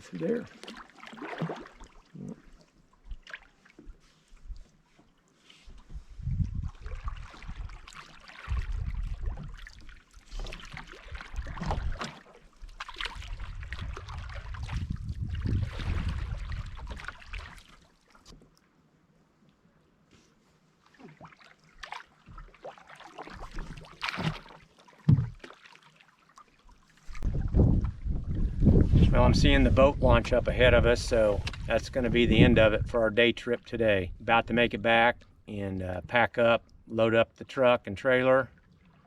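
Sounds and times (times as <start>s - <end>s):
water splashing and dripping: 0.0s - 3.9s, 6.5s - 18.6s, 20.8s - 28.4s
paddle strokes: 0.0s - 29.2s.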